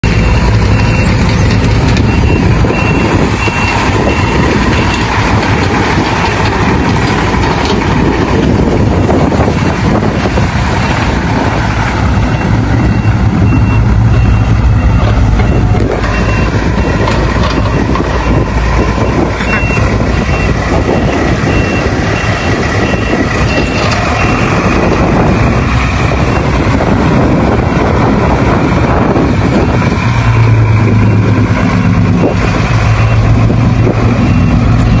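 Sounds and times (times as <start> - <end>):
heavy diesel engines running: 0.0 - 35.0
reversing alarm beeps: 2.0 - 5.0, 12.3 - 24.6, 31.0 - 33.4, 34.2 - 35.0.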